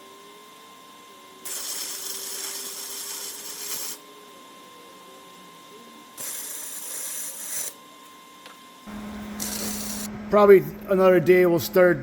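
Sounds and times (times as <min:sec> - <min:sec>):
welding arc hissing and crackling: 0:01.5 - 0:04.0, 0:06.2 - 0:07.8, 0:08.9 - 0:10.1.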